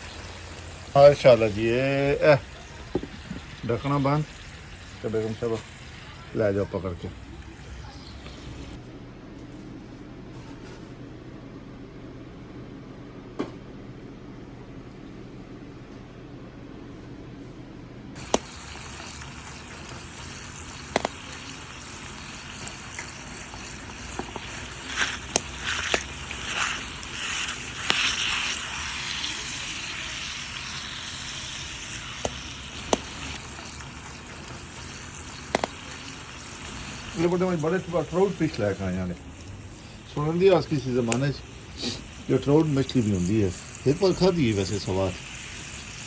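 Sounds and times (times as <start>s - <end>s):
food sizzling in hot oil: 0.0s - 8.8s, 18.2s - 46.0s.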